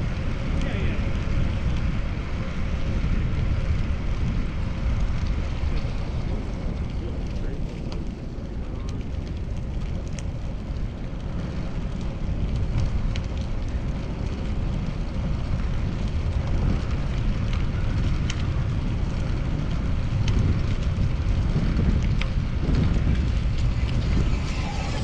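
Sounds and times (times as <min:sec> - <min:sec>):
wind rumble on microphone: 0:00.0 - 0:25.0
road and traffic noise: 0:18.5 - 0:25.0.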